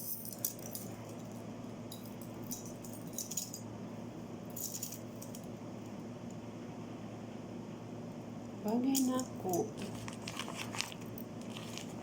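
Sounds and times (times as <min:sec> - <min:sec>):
metal jewelry clinking: 0:00.0 - 0:03.7, 0:04.5 - 0:05.5
steady low hum: 0:00.0 - 0:12.0.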